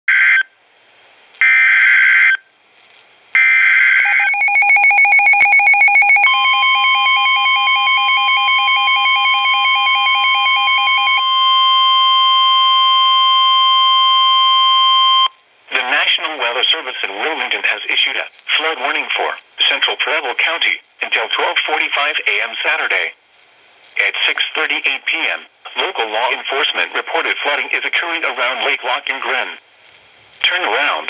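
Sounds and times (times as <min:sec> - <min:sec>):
screeching digital data tones: 0:03.4 - 0:13.4
steady warning alarm tone: 0:03.4 - 0:15.4
pulsing two-tone beeping: 0:04.0 - 0:15.3.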